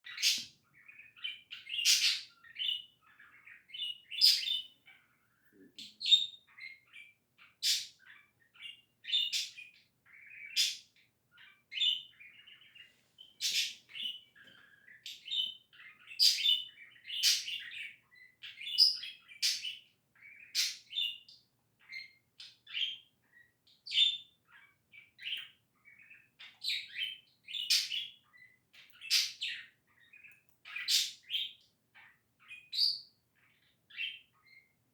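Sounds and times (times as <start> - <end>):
budgerigar chattering: 0.1 - 5.1, 13.4 - 14.2, 15.1 - 21.2.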